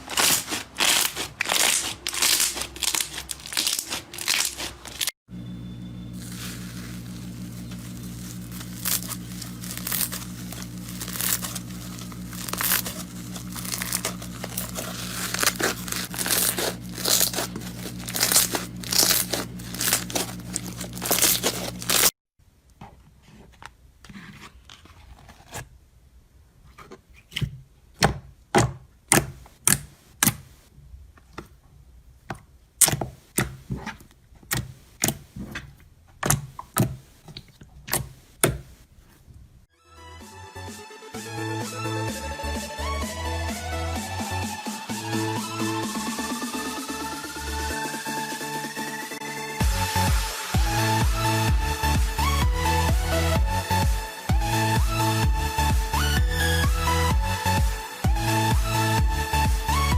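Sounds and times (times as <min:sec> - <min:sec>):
slime crackling: 0:00.0 - 0:05.1, 0:06.2 - 0:22.1
steady low hum: 0:05.3 - 0:22.1.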